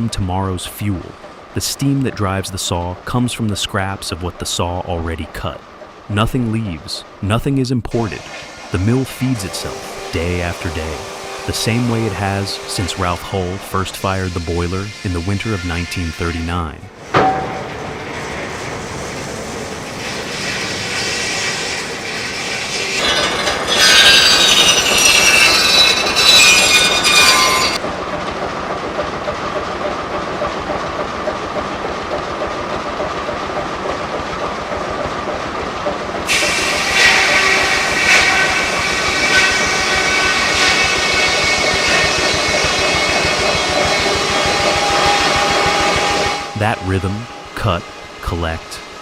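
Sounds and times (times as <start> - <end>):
sawmill machinery clattering: 0.0 - 49.0
high-pitched machine squeal: 8.0 - 16.7, 20.4 - 27.8, 36.3 - 49.0.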